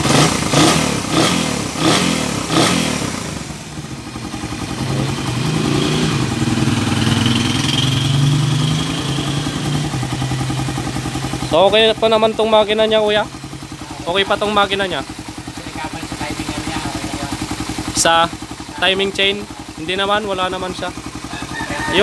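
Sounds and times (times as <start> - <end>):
motorcycle engine idling: 0.0 - 22.0
motorcycle engine revving: 0.0 - 22.0.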